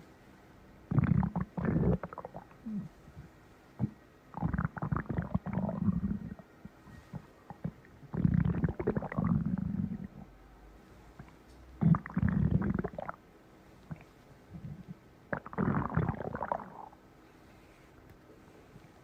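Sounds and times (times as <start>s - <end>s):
stomach growling: 0.9s - 6.5s, 7.1s - 10.4s, 11.2s - 13.2s, 13.9s - 17.0s.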